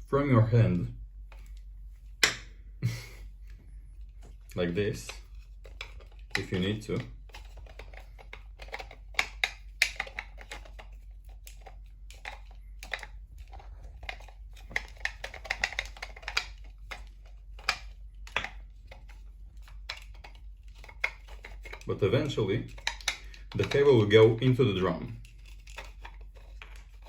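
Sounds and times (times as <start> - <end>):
cable winding onto plastic drum: 19.8 - 24.4.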